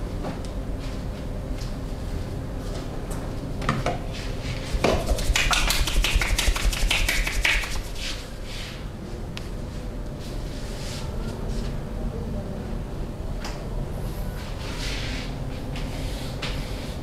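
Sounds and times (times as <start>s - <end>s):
hands tapping and slapping body: 4.8s - 7.9s.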